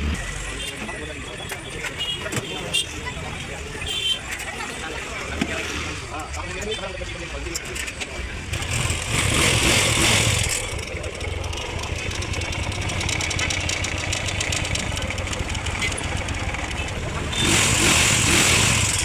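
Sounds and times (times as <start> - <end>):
motorcycle engine running and revving: 0.0 - 1.0, 7.9 - 19.0.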